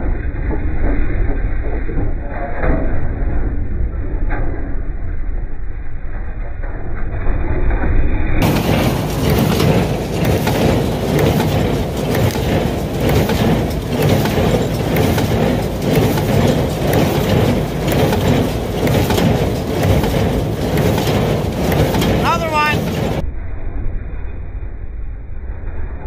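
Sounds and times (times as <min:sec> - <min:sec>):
baler mechanism clattering rhythmically: 0:08.4 - 0:23.2
tractor engine: 0:08.4 - 0:23.2.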